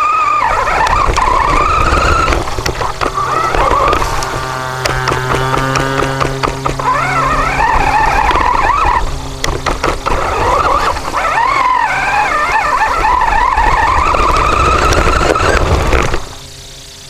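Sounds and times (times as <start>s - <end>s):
motor whine wavering in pitch: 0.0s - 17.0s.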